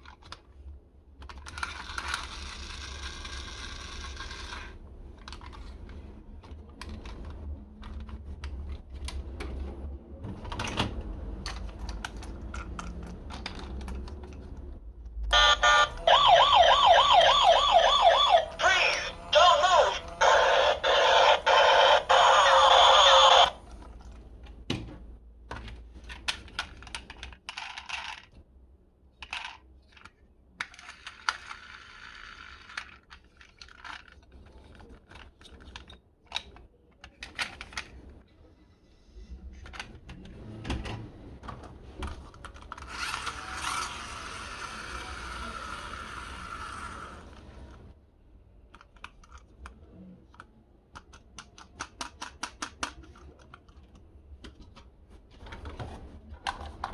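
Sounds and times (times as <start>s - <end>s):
plastic clicks and rattles: 10.5s - 14.7s, 48.7s - 55.8s
toy ambulance siren wailing: 15.3s - 23.6s.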